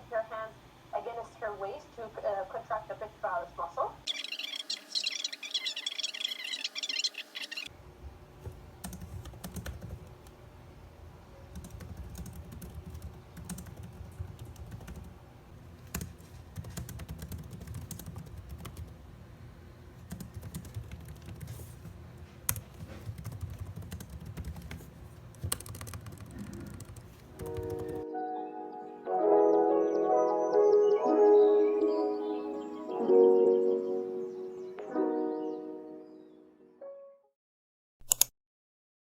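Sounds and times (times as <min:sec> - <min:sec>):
keyboard typing: 0:08.8 - 0:10.2, 0:11.5 - 0:15.1, 0:15.8 - 0:19.0, 0:20.0 - 0:28.1.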